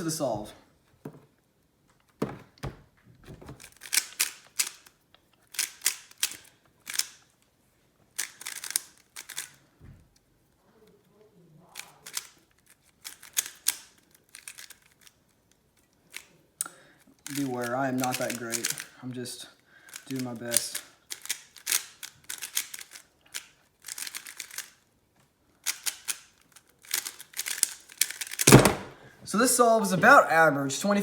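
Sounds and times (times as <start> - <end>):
puzzle cube plastic clicks: 3.3 - 7.4, 8.1 - 9.6, 11.8 - 18.9, 19.8 - 24.9, 25.6 - 28.9.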